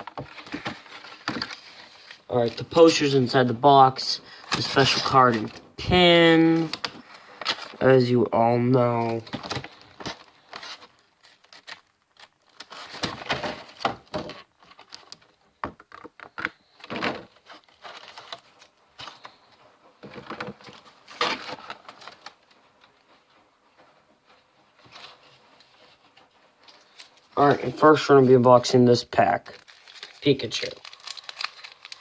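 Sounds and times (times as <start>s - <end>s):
packaging rustling: 0.0s - 7.9s, 9.0s - 19.4s, 20.0s - 22.5s, 29.2s - 32.0s.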